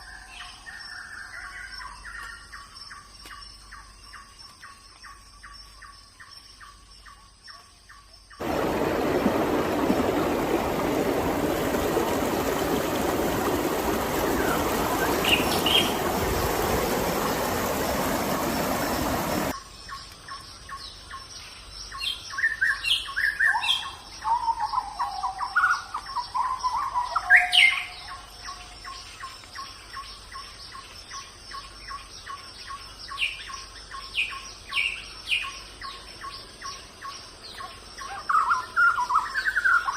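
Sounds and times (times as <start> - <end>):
insects trilling: 0.0 - 39.9
songbirds chirping and whistling: 0.0 - 39.9
loud even rushing hiss: 8.4 - 19.5.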